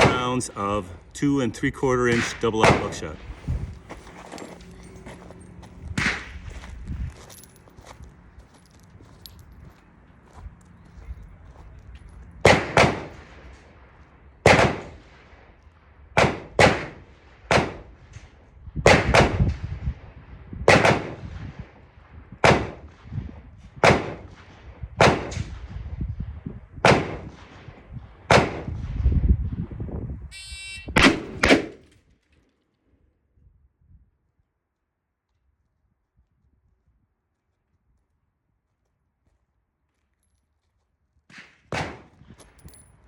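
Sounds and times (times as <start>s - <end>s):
shotgun shots: 0.0s - 3.8s, 5.9s - 6.7s, 12.4s - 13.5s, 14.4s - 15.3s, 16.2s - 18.3s, 18.9s - 19.6s, 20.7s - 21.6s, 22.4s - 23.0s, 23.8s - 25.7s, 26.8s - 27.7s, 28.3s - 28.8s, 30.6s - 32.0s, 41.3s - 42.2s
echoing gunshots: 0.0s - 3.9s, 5.9s - 6.7s, 12.4s - 25.9s, 26.8s - 29.1s, 30.9s - 31.9s, 41.3s - 42.2s
shot timer beep: 30.3s - 31.1s.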